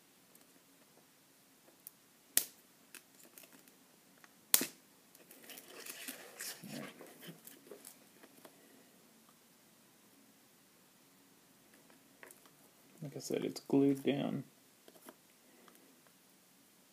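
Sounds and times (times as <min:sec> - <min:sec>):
scratchy crackling of adhesive: 0:04.5 - 0:08.0.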